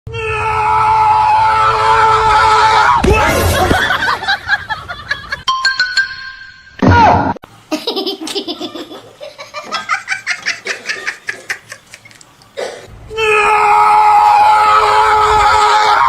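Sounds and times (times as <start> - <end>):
loud long cry: 0.1 - 4.2, 13.1 - 16.0.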